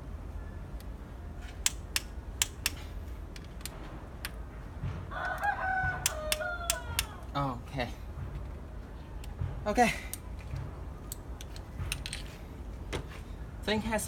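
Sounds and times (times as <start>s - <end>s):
wrench clicking: 1.6s - 4.4s, 5.2s - 7.2s
rooster crowing: 5.1s - 7.3s.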